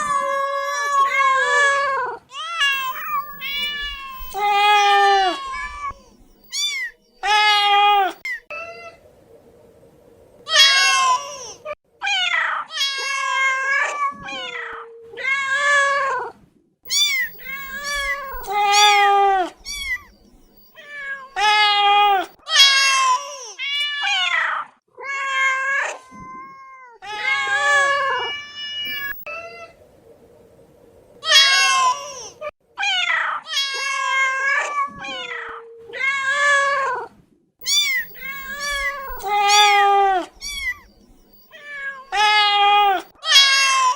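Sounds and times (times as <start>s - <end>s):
cat meowing: 0.0s - 9.0s, 16.9s - 29.7s, 31.2s - 43.9s.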